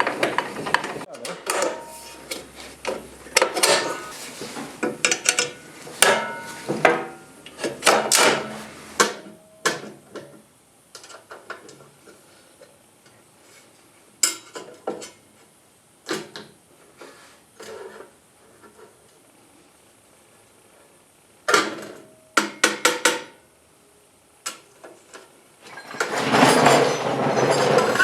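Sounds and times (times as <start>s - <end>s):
metal parts clinking and knocking: 3.4s - 4.2s.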